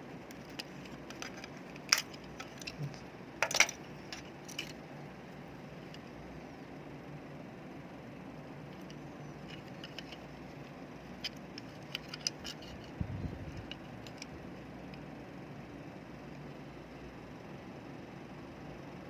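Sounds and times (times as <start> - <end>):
small plastic and metal parts clicking: 0.3 - 4.8, 8.7 - 15.0.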